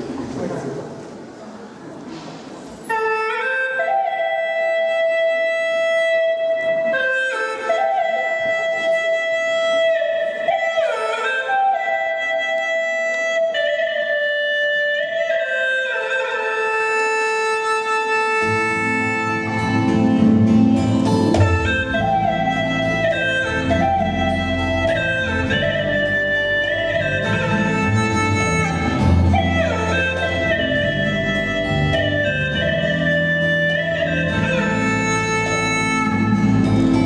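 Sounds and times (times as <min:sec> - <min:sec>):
slow flute-like melody: 0:02.8 - 0:37.0
deeper accompaniment: 0:18.4 - 0:37.0.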